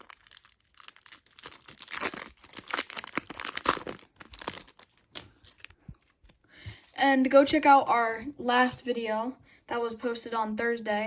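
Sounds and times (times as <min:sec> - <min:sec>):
foil pack tearing and crinkling: 0:00.0 - 0:05.8.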